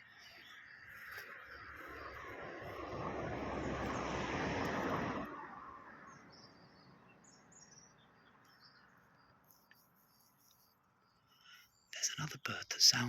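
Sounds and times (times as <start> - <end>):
small birds chirping: 0.0 - 5.0, 6.1 - 13.0
car passing by: 0.1 - 8.4.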